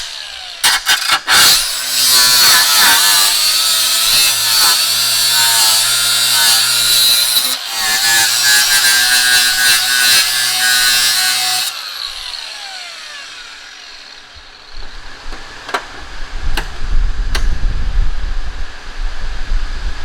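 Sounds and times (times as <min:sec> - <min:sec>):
power cutting tool whining: 0:00.0 - 0:17.6
sharp knocks: 0:15.3 - 0:17.6.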